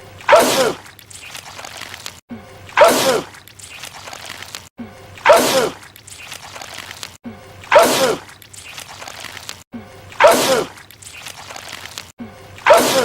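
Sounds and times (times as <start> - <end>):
man sneezing: 7.7 - 8.2, 12.7 - 13.0.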